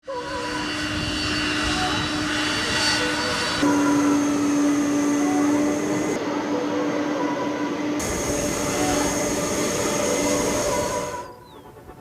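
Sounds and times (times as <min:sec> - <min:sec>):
jet engines whining: 0:00.0 - 0:12.0
rushing noise: 0:00.9 - 0:12.0.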